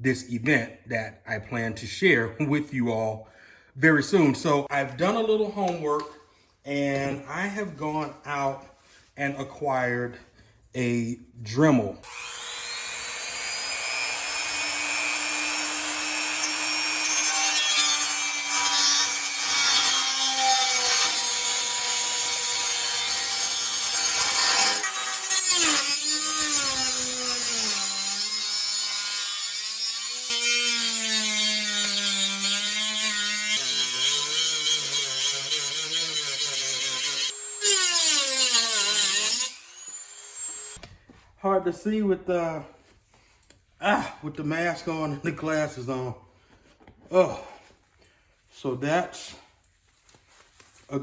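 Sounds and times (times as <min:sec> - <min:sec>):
rotary tool cutting sheet metal: 0:12.1 - 0:40.8.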